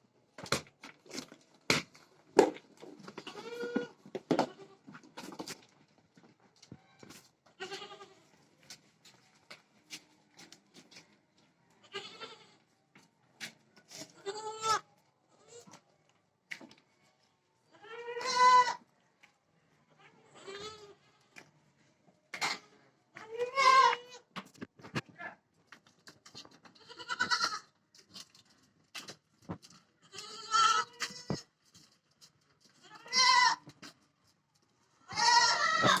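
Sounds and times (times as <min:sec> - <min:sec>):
goats bleating: 0:03.2 - 0:04.8, 0:07.6 - 0:08.2, 0:11.8 - 0:12.6, 0:17.8 - 0:18.8, 0:23.3 - 0:24.2, 0:26.8 - 0:27.7, 0:30.0 - 0:31.4, 0:32.8 - 0:33.6, 0:35.1 - 0:36.0.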